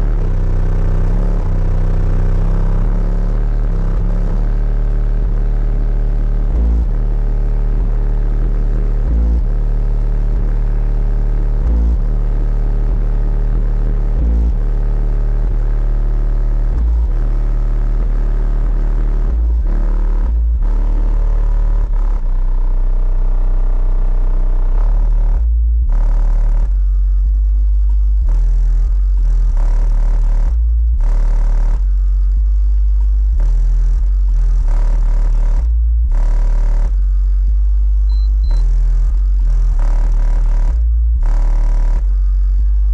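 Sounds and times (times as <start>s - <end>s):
bass-heavy music through car stereo: 0.0s - 42.9s.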